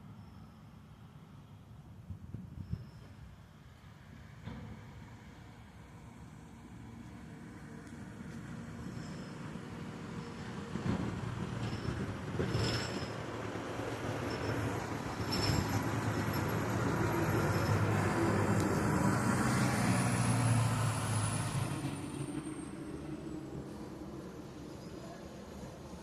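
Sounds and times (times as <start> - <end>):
faint high whistle: 24.7 - 25.5.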